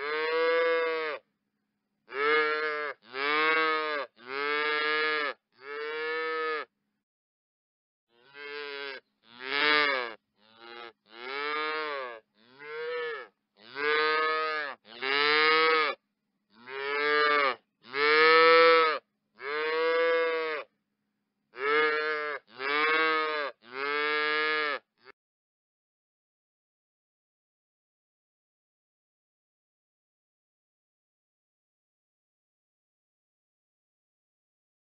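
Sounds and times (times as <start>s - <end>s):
cow mooing: 0.0s - 1.2s, 2.1s - 6.7s, 8.1s - 16.0s, 16.6s - 20.7s, 21.6s - 24.8s.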